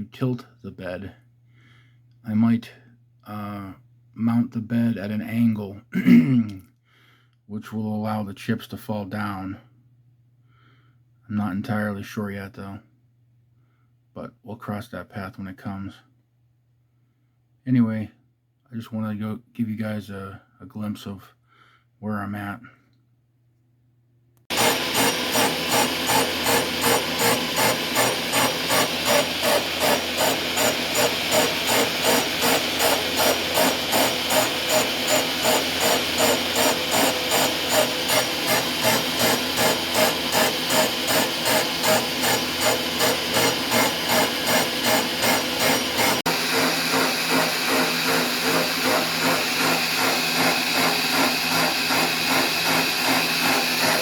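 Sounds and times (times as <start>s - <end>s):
machine tool cutting metal: 24.5s - 54.0s.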